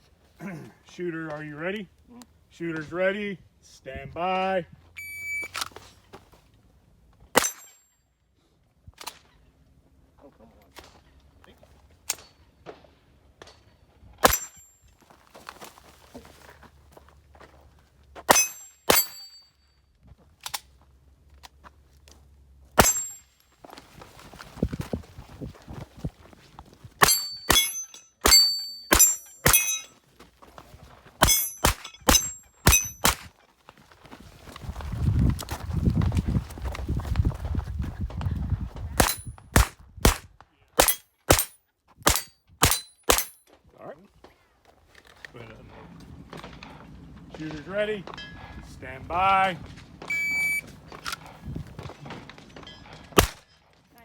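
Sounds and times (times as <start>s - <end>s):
steel target ringing: 5.0s - 5.5s, 7.4s - 7.8s, 14.2s - 14.7s, 18.3s - 19.5s, 22.8s - 23.3s, 27.0s - 30.0s, 31.2s - 33.2s, 50.1s - 50.6s
pistol shots: 14.2s - 14.6s, 22.8s - 23.2s, 31.2s - 33.3s, 39.0s - 43.4s, 53.2s - 53.4s.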